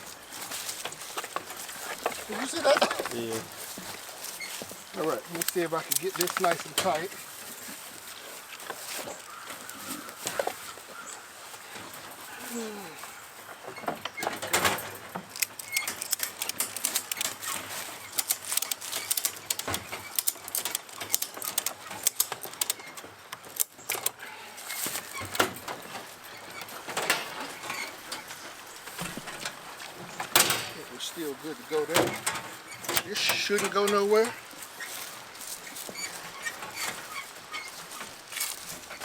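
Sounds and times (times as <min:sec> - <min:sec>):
farm animals calling: 0:00.0 - 0:14.2, 0:22.9 - 0:39.0
clicking and rattling: 0:00.4 - 0:07.2, 0:13.7 - 0:39.0.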